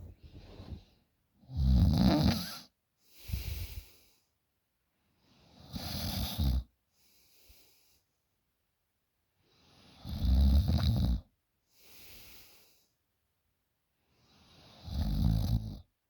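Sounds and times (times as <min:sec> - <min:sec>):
woman snoring loudly: 0:01.6 - 0:02.6.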